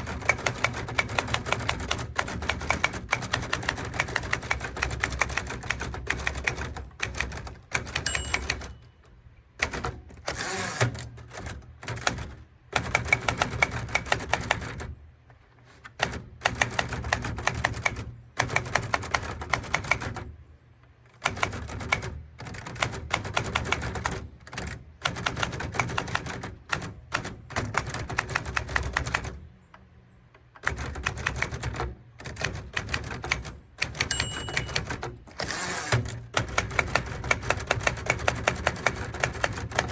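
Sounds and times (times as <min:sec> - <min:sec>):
typewriter keys clacking: 0:00.0 - 0:09.0, 0:30.6 - 0:39.9.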